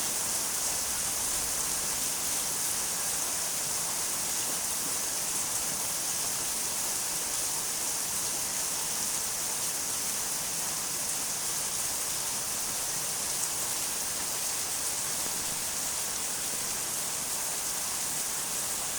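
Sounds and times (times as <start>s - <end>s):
steady rain: 0.0s - 18.9s.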